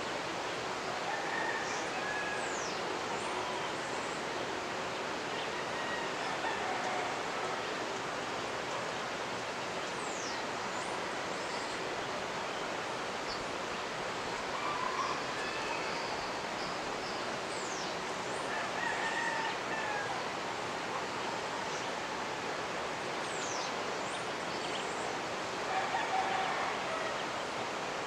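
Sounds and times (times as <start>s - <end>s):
river rushing: 0.0s - 28.0s
faint rooster crowing: 0.8s - 4.5s, 5.3s - 8.0s, 14.4s - 22.6s, 25.6s - 27.6s.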